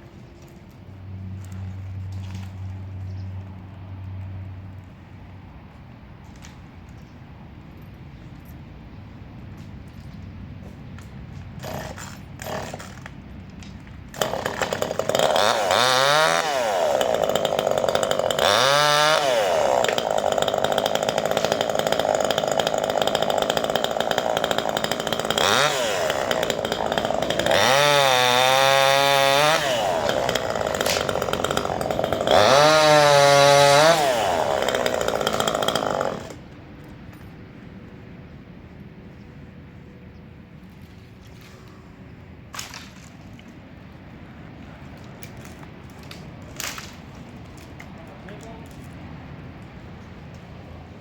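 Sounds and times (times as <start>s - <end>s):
chainsaw cutting branches: 11.6s - 13.2s, 14.1s - 36.5s.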